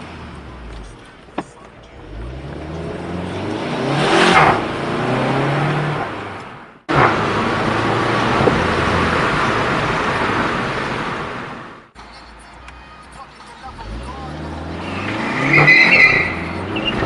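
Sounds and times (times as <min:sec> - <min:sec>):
car engine under load: 0:00.0 - 0:17.0
car rushing past: 0:02.0 - 0:11.9, 0:13.7 - 0:17.0.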